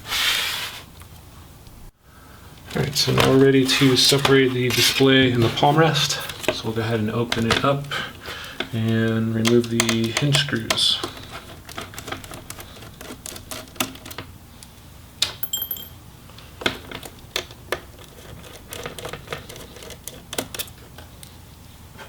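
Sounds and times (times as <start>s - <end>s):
metallic taps of screws: 15.4s - 16.0s.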